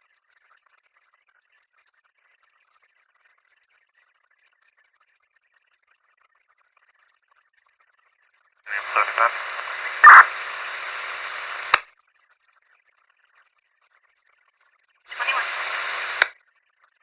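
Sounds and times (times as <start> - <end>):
squelch click: 8.7 - 11.8
garbled radio blips: 8.7 - 11.9, 15.1 - 16.3
radio static hiss: 8.7 - 11.9, 15.1 - 16.3.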